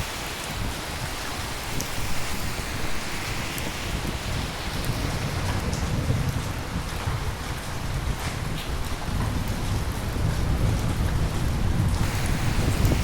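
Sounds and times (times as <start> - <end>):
heavy rain hissing: 0.0 - 8.0, 12.0 - 13.0
distant thunder rumble: 12.0 - 13.0.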